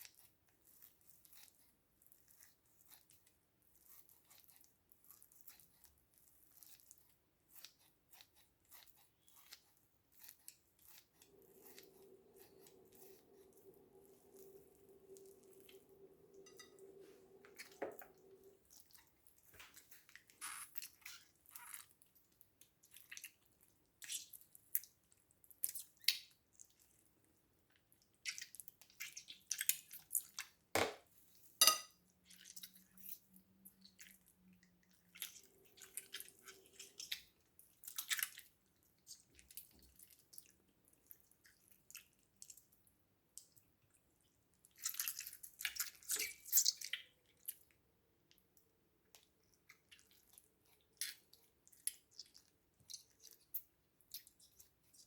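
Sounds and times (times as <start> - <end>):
steady low hum: 11.2 - 18.7.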